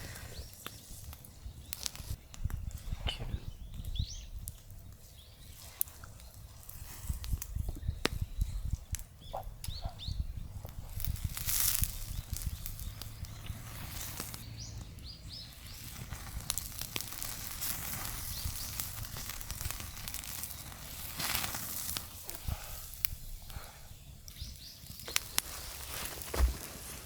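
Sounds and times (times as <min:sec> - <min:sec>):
bird chirping: 0:00.0 - 0:06.4, 0:07.6 - 0:10.6, 0:11.2 - 0:16.3, 0:23.1 - 0:26.5
wood bonfire crackling: 0:00.0 - 0:27.0.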